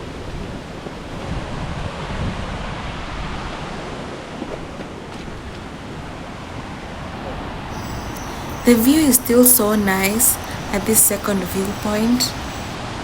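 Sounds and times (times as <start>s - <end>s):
waterfall rushing: 7.7s - 12.8s.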